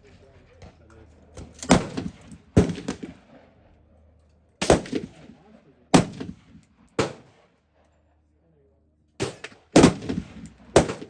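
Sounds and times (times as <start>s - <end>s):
rifle shots with echo: 1.4s - 3.6s, 4.6s - 7.5s, 9.2s - 11.0s.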